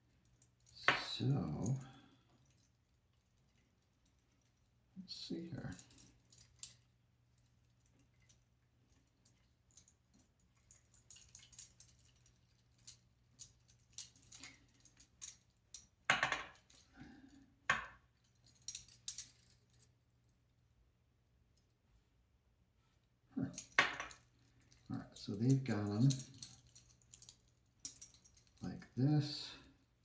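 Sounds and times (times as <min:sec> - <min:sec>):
small parts clicking and clinking: 0:05.5 - 0:20.0, 0:23.4 - 0:30.0.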